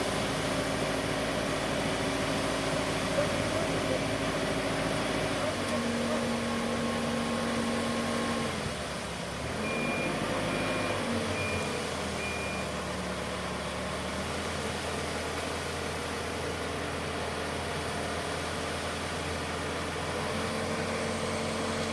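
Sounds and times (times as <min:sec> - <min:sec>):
concrete mixer engine running: 0:00.0 - 0:21.9
reversing alarm beeps: 0:09.6 - 0:12.8.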